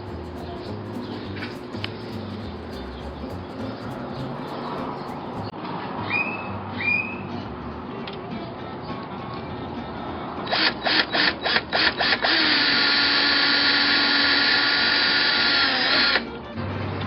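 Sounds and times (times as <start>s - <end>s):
power drill bursts: 10.5s - 16.2s.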